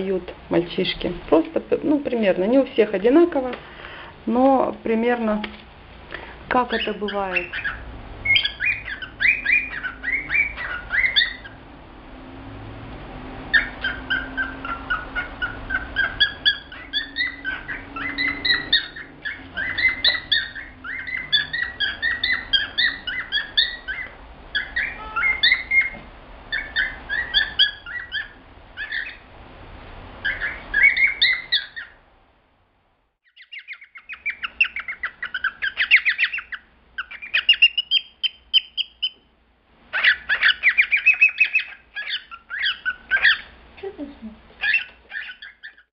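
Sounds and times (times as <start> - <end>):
cockatiel whistling: 6.8 - 11.6, 13.5 - 29.2, 30.2 - 32.0, 33.2 - 39.2, 39.9 - 43.5, 44.6 - 45.9.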